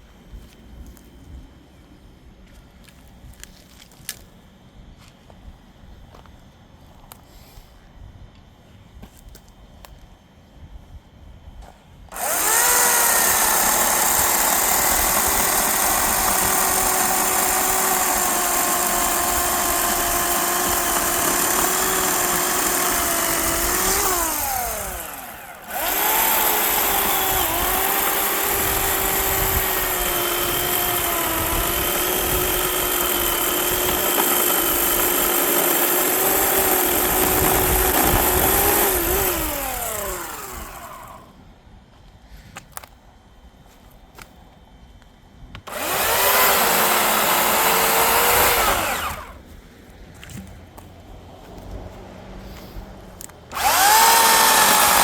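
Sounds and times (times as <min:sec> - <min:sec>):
electric chainsaw cutting log: 0:12.1 - 0:41.3, 0:45.7 - 0:49.4, 0:52.5 - 0:55.0.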